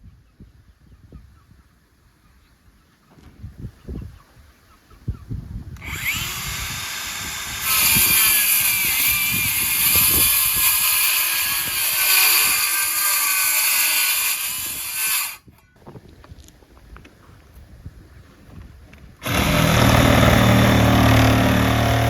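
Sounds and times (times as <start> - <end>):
power tool whining: 5.8 - 15.4, 19.2 - 22.0.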